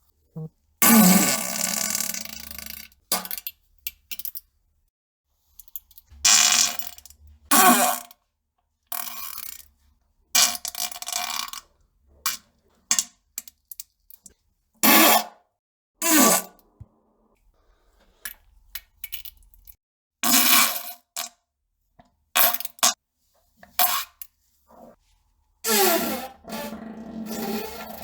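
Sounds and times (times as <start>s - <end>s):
farts: 0.4s - 2.8s, 25.7s - 28.0s.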